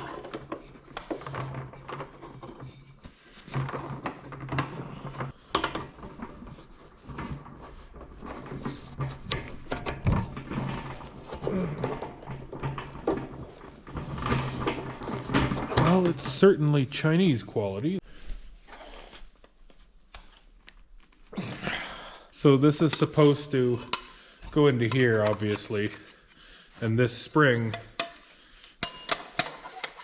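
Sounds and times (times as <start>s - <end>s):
clicks knocks and rattles: 0.0s - 16.4s.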